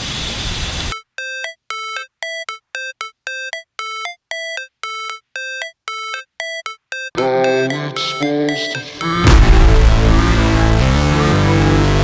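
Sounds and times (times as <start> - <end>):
synthesizer ringtone melody: 0.9 - 12.0
steady noise: 9.2 - 12.0.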